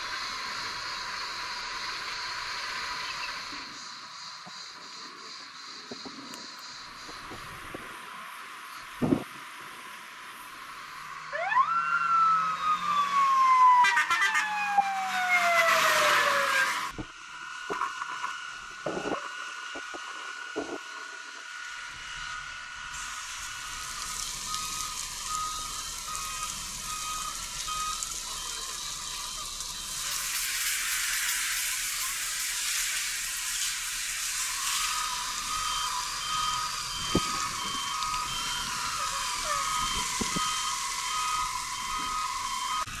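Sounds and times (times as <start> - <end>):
constant hiss: 0.0 - 11.3, 16.9 - 43.0
loud rush of hissing noise: 0.0 - 11.3, 15.8 - 43.0
reversing alarm beeps: 22.2 - 30.6, 34.2 - 43.0.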